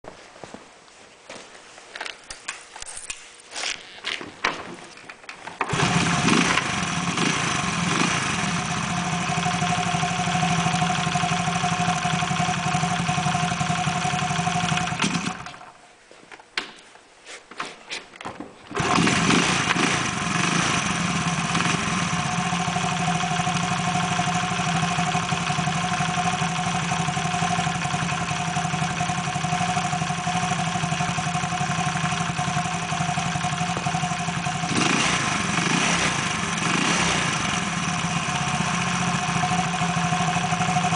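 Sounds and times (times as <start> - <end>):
engine cranking and running: 5.6 - 15.7, 18.8 - 40.9.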